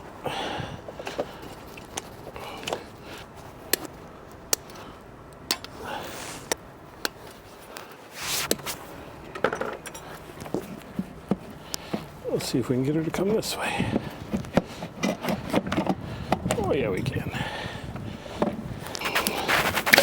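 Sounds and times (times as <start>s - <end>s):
metal tools clicking and clinking: 9.3s - 10.2s.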